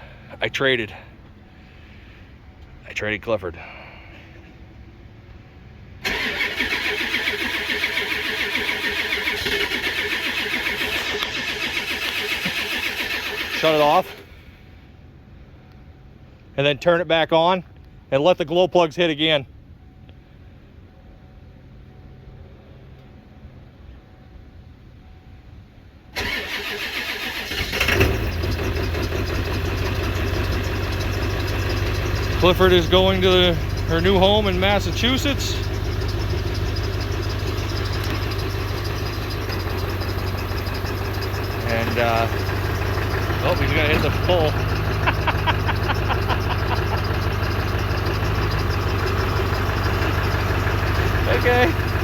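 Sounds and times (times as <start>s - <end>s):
diesel truck engine starting: 5.8s - 14.9s, 26.1s - 52.0s.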